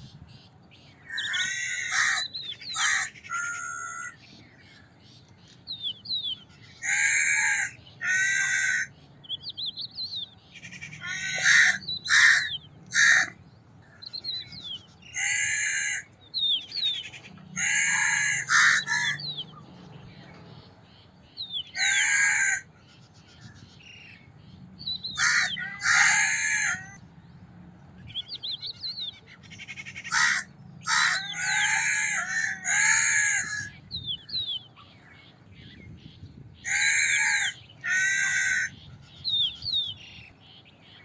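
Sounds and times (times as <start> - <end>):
small birds chirping: 0.0 - 41.0
crows cawing: 1.0 - 4.2, 6.7 - 9.0, 10.6 - 14.1, 15.0 - 16.1, 17.1 - 19.5, 21.7 - 22.8, 25.1 - 27.0, 29.5 - 33.8, 36.6 - 39.1.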